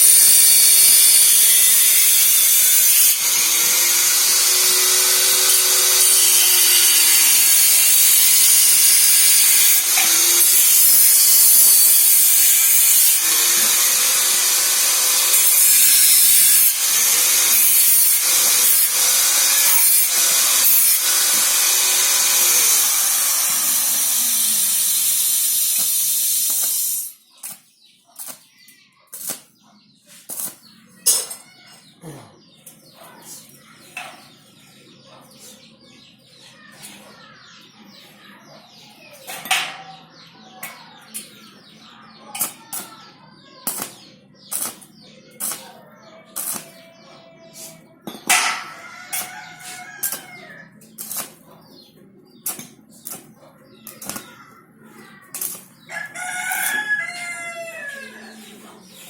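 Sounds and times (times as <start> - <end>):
welding arc crackling: 0.0 - 28.4, 30.3 - 30.6, 43.6 - 45.7, 46.4 - 46.8, 48.3 - 51.4, 52.4 - 54.4, 55.3 - 57.0.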